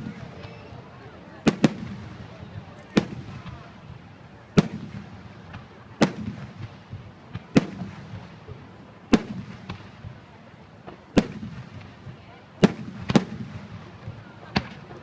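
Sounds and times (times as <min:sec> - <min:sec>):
small firework pops: 0:00.0 - 0:15.0.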